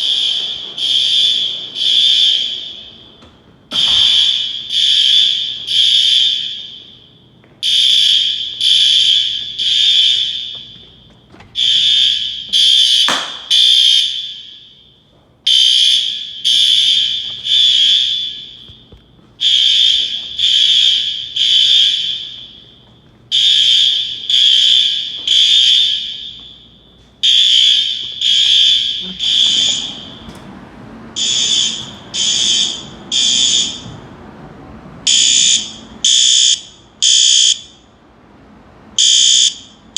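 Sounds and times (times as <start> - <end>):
fire alarm horn blasts: 0.0 - 30.4, 31.2 - 34.2, 35.0 - 38.0, 39.0 - 39.9
sharp knock: 13.1 - 13.5.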